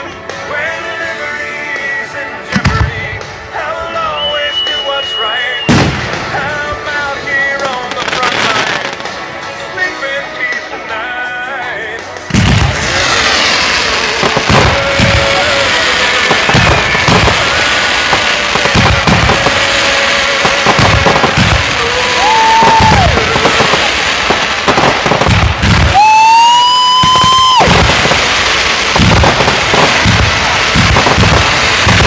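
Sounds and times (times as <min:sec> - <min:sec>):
fireworks banging and crackling: 0:00.0 - 0:32.0
whistling fireworks shrieking: 0:03.8 - 0:09.2, 0:12.4 - 0:32.0.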